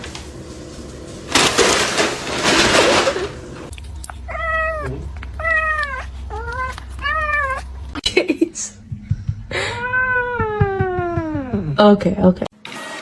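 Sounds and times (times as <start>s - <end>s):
cat meowing: 4.1s - 7.8s, 9.6s - 11.8s.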